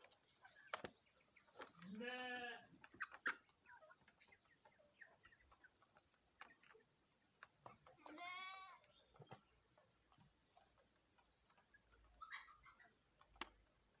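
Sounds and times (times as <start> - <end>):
chicken soft clucks: 2.6 - 8.2, 8.8 - 14.0
chicken drawn-out call: 12.2 - 13.0.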